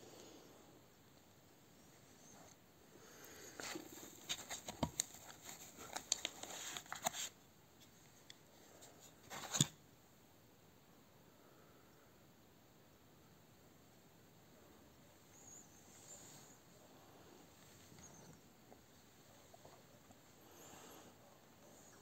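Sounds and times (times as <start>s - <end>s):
handling clicks and rustles: 3.6s - 9.7s.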